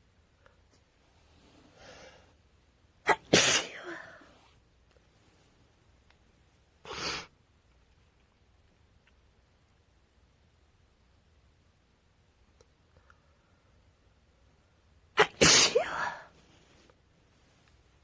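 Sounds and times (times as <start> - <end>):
drawn-in breath: 1.4 - 2.4
woman sneezing: 3.1 - 4.3, 15.2 - 16.4.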